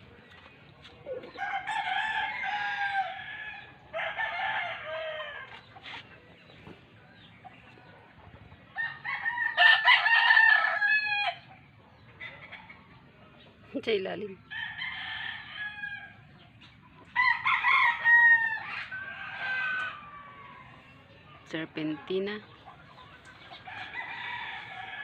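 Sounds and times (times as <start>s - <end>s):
rooster crowing: 1.4s - 5.5s, 8.8s - 11.5s, 14.5s - 16.2s, 17.2s - 20.8s, 23.6s - 25.0s.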